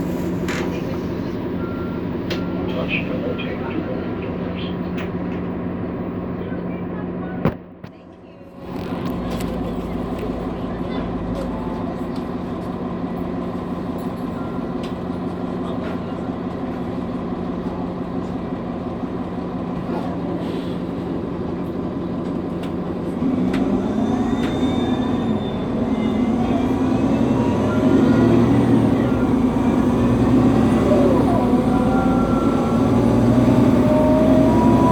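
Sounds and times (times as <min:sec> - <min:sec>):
bus engine drone: 0:00.0 - 0:34.9
rising whine: 0:23.3 - 0:34.9.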